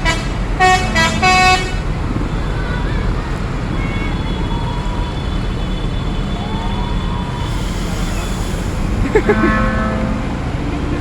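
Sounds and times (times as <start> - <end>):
diesel bus engines rumbling: 0.0 - 11.0
air hiss: 7.3 - 9.9.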